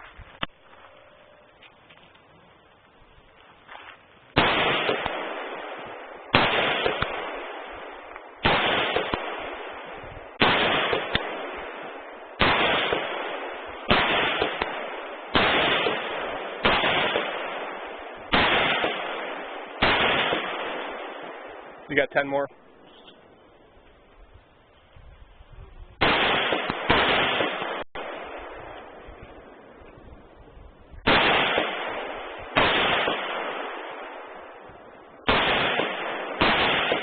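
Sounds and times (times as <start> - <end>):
rifle shots: 4.3 - 22.4, 26.0 - 29.1, 31.0 - 37.0.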